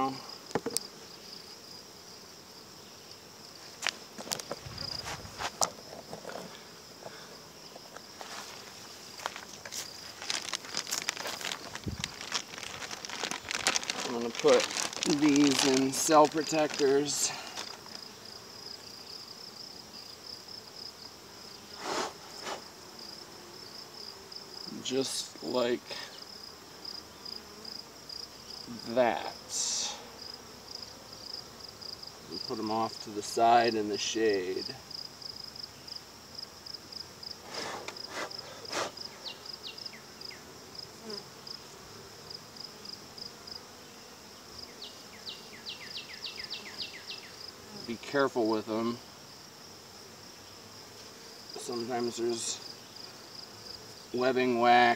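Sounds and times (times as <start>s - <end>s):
insects chirping: 0.0s - 54.9s
insect high-pitched trill: 2.8s - 7.0s, 44.6s - 47.9s
handling rustles: 3.7s - 18.0s.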